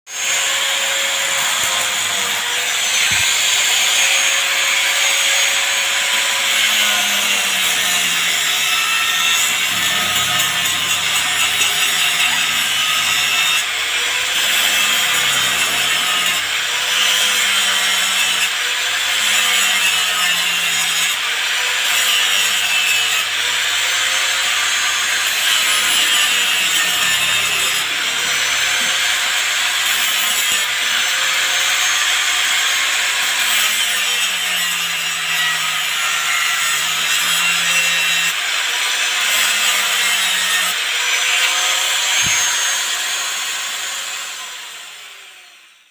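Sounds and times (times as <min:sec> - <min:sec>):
harsh cutting and scraping: 0:00.1 - 0:45.1.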